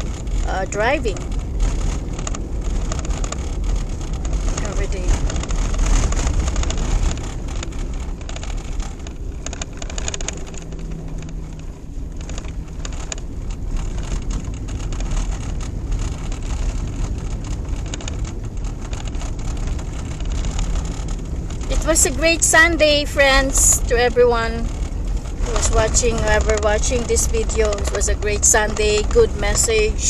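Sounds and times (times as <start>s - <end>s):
engine and tyre rumble: 0.0s - 30.0s.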